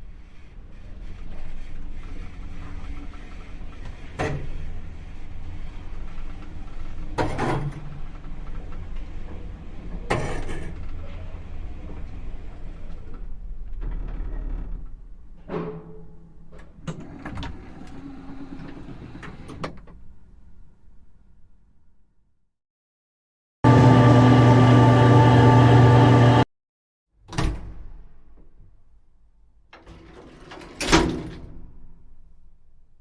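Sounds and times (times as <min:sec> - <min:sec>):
elevator low rumble: 0:23.7 - 0:26.4.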